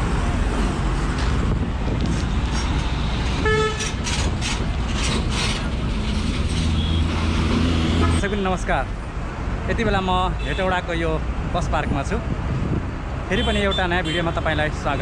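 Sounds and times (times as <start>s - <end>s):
bus engines running: 0.0s - 13.3s
vehicle horn honking: 3.4s - 3.9s, 6.6s - 7.1s, 7.8s - 8.4s.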